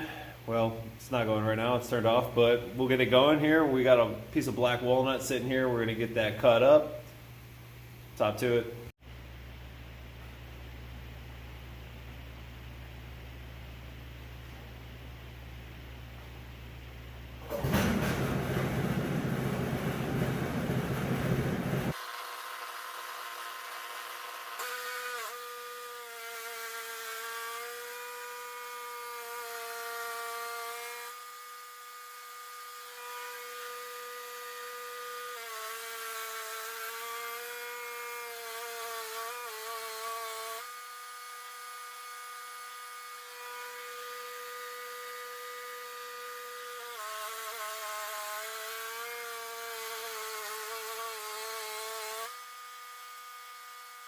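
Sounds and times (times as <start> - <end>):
bandsaw mill cutting log: 17.4 - 54.0
loud rough noise: 17.5 - 21.9.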